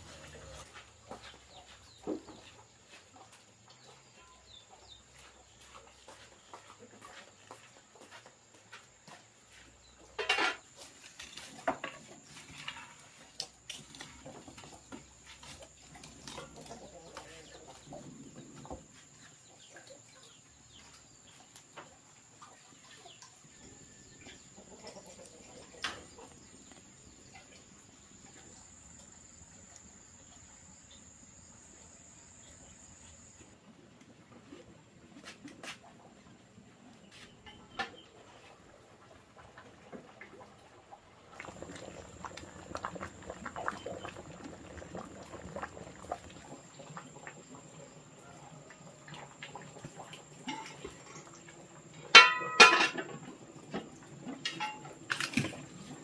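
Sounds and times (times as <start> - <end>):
chickens clucking: 0.0 - 30.8.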